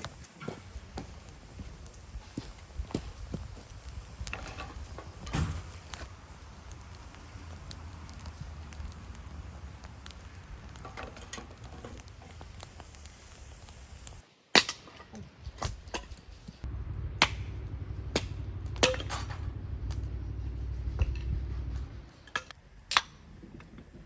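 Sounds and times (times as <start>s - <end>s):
camp cookware clicking: 3.7s - 15.0s, 22.2s - 24.0s
low steady rumble: 16.6s - 24.0s.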